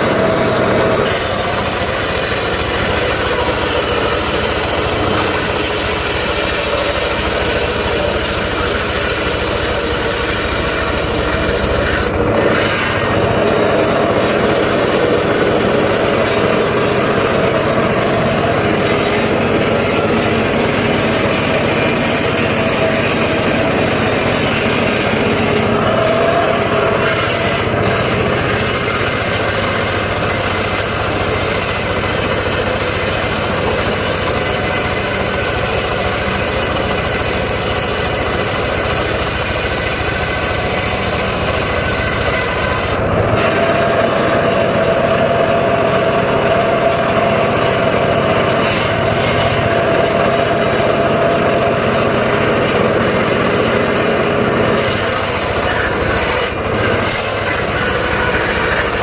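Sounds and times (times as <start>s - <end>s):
engine-driven saw running: 0.0s - 59.0s.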